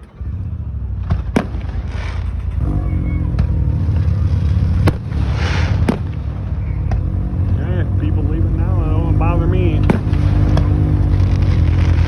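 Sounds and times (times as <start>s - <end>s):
car engine running: 0.0s - 12.0s
firework cracks: 1.0s - 2.6s, 4.8s - 7.1s, 9.8s - 12.0s.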